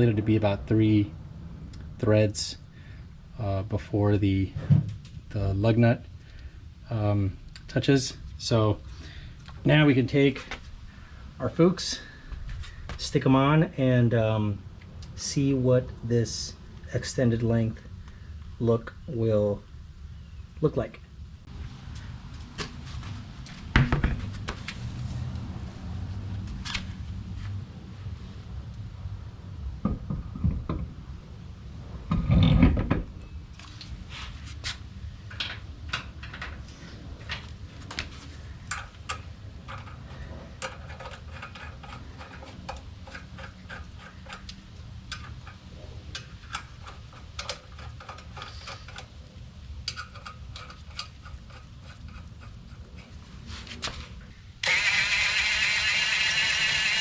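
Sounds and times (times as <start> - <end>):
heavy wheel thump: 23.6 - 24.6
lug nuts clicking onto studs: 38.6 - 49.1, 49.8 - 53.2.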